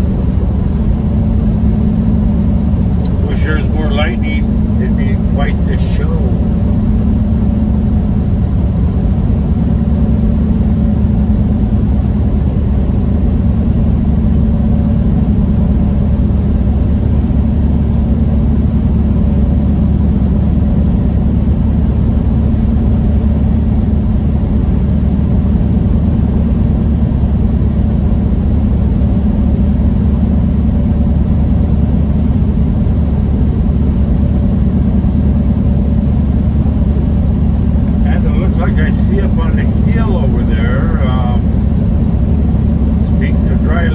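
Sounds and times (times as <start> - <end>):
truck engine drone: 0.0 - 16.7, 22.8 - 43.9
road noise: 2.6 - 7.1, 37.0 - 43.9.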